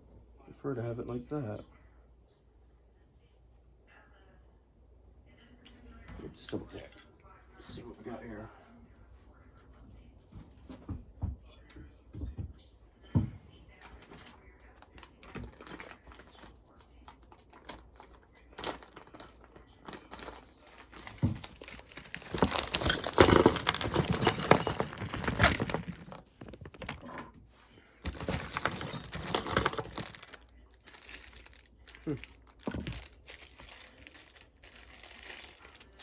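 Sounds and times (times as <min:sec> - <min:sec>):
plastic packaging rustling: 0:15.0 - 0:16.5, 0:17.2 - 0:27.1, 0:28.1 - 0:36.0
metal parts clinking: 0:20.2 - 0:27.1, 0:28.1 - 0:36.0.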